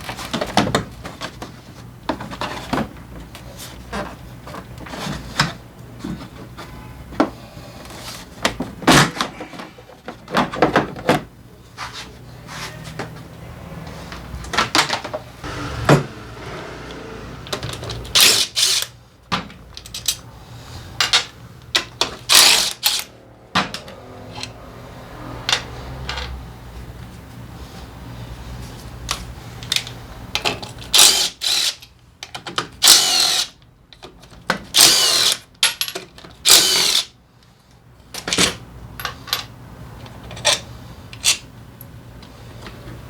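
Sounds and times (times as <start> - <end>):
loud knocks: 15.4 - 18.3
steady low hum: 15.4 - 18.6
metal tools clicking and clanking: 19.7 - 20.3.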